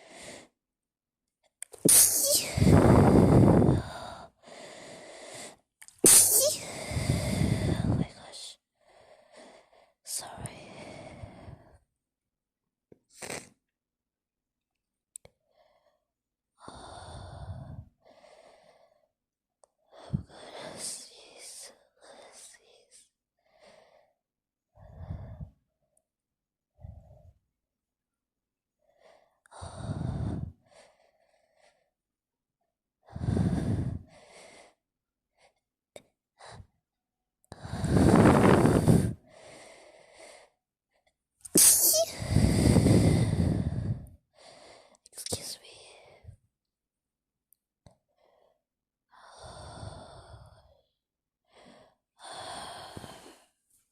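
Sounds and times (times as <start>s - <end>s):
woman breathing heavily: 0.0s - 0.6s, 1.9s - 11.9s, 15.4s - 19.1s, 19.8s - 24.2s, 24.8s - 25.7s, 28.8s - 32.0s, 33.0s - 35.6s, 37.5s - 46.4s, 48.0s - 53.6s
woman sneezing: 1.9s - 2.6s, 6.0s - 6.6s, 41.5s - 42.2s
sharp catch of breath: 41.5s - 45.5s.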